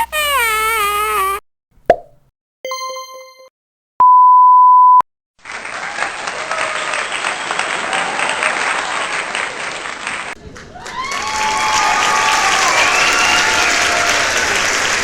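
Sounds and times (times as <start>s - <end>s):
chime-like ding: 2.7s - 3.5s
censor bleep: 4.0s - 5.0s
crowd applauding: 5.4s - 15.0s.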